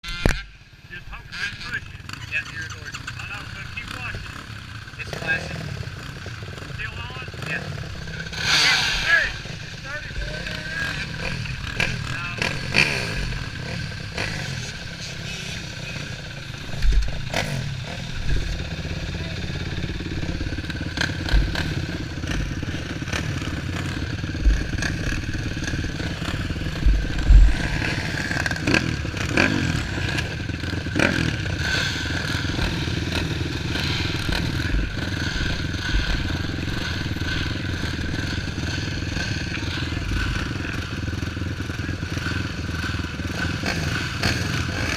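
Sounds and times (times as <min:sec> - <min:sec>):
racing engine running: 0:00.0 - 0:44.9
deep thumps and knocks: 0:21.1 - 0:22.5, 0:24.3 - 0:25.4, 0:26.7 - 0:28.0.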